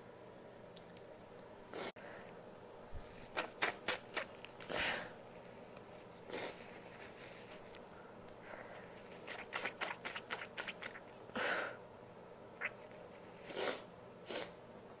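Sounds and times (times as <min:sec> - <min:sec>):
nasal puffs: 0:03.2 - 0:04.6, 0:08.7 - 0:11.2, 0:12.6 - 0:14.5
woman sniffing: 0:06.3 - 0:06.7, 0:13.5 - 0:14.6.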